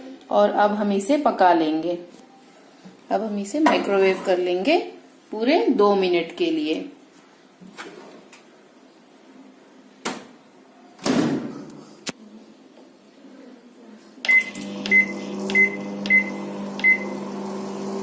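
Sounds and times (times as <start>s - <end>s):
microwave keypad beeps: 14.3s - 17.2s
microwave oven humming: 14.4s - 18.0s.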